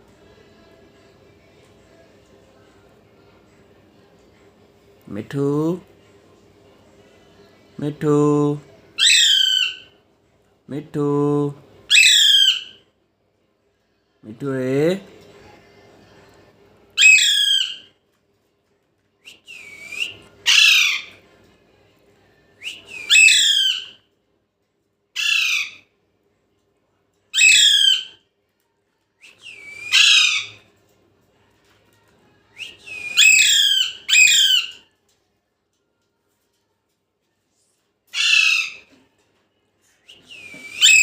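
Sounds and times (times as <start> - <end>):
parrot calling: 9.0 - 10.0, 11.9 - 12.8, 17.0 - 17.9, 19.5 - 21.2, 22.6 - 24.0, 25.1 - 25.9, 27.3 - 28.2, 29.3 - 30.6, 32.6 - 34.8, 38.1 - 39.0, 40.3 - 41.0.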